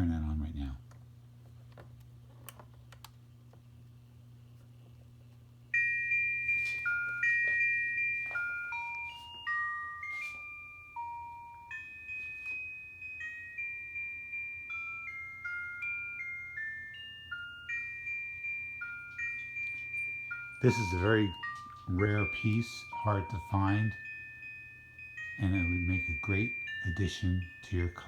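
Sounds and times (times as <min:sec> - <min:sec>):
low steady hum: 0:00.0 - 0:28.0
electronic chime melody: 0:05.7 - 0:28.0.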